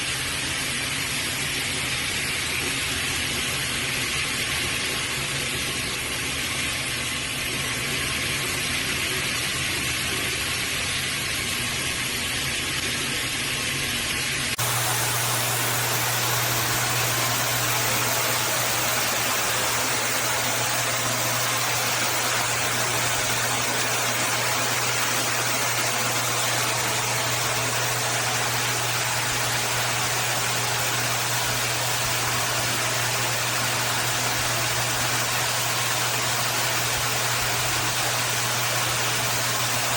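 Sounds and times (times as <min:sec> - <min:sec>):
shower spraying water: 0:00.0 - 0:39.9
low hum: 0:14.6 - 0:24.4.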